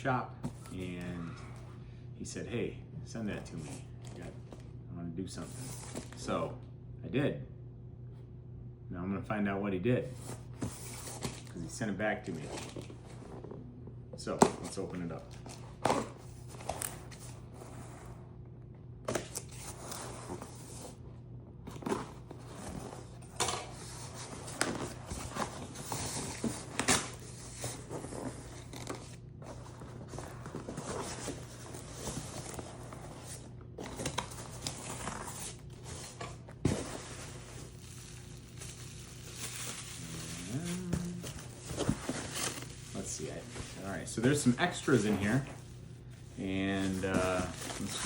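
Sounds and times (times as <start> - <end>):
packaging tearing and crinkling: 36.7 - 43.1.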